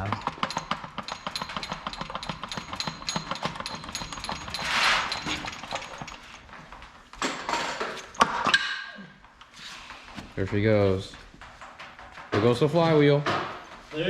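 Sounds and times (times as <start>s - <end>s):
hand ratchet clicking: 0.0s - 6.2s
sharp metal knocks: 0.0s - 6.2s.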